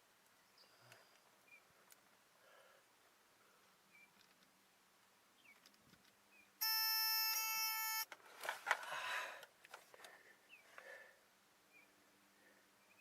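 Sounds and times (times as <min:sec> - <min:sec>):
rustling and clicking handling noise: 0:04.1 - 0:04.6, 0:05.5 - 0:06.2, 0:08.1 - 0:10.2
electronic beep: 0:06.6 - 0:08.1.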